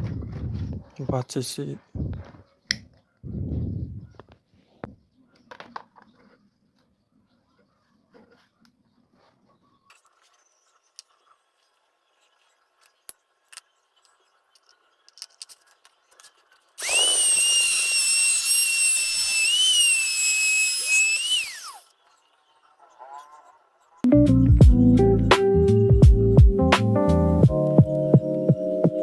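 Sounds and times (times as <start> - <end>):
faint clicks of parts handled: 12.8 - 16.7
electric power tool whining: 16.8 - 22.1.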